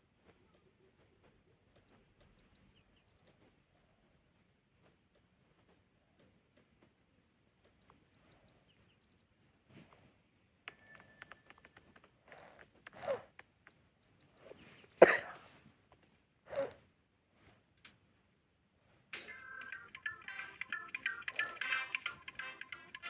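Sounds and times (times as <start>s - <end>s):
faint high chirping: 0.4s - 3.8s, 7.7s - 9.6s, 10.7s - 15.5s, 19.2s - 23.0s
person coughing: 12.3s - 13.3s, 15.0s - 15.4s, 16.5s - 16.8s.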